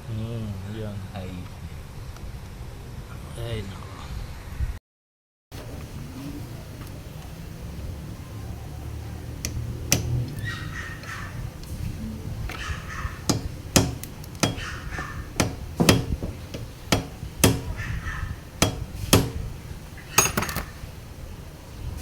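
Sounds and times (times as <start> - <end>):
tool knocking on metal: 9.5 - 10.2, 12.5 - 17.8, 18.6 - 19.6.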